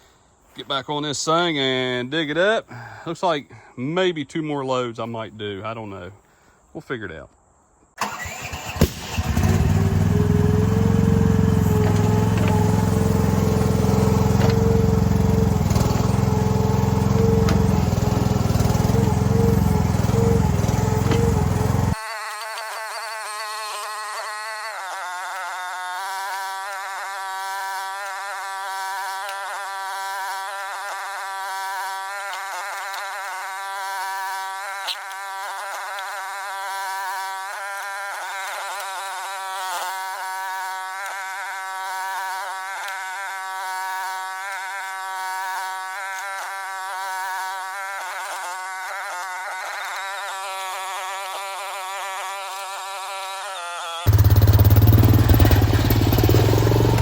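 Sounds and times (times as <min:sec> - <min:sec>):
engine running low: 0:08.0 - 0:22.0, 0:54.1 - 0:57.0
mini excavator engine buzzing drone: 0:08.0 - 0:57.0.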